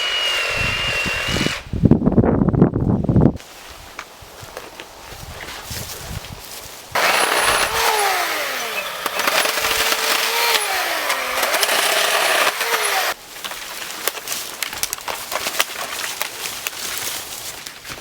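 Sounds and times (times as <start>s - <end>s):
motorised saw cutting: 0.0s - 1.7s, 7.0s - 13.2s.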